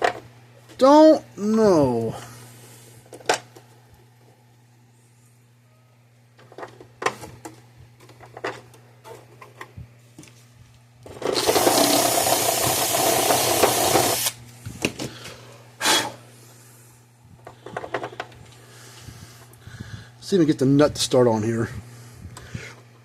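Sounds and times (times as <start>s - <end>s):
power drill running: 11.3s - 14.4s.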